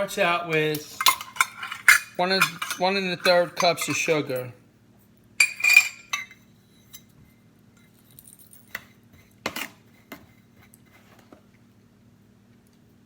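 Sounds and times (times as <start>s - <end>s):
kitchen utensils and dishes clinking: 0.5s - 4.5s, 5.4s - 7.1s.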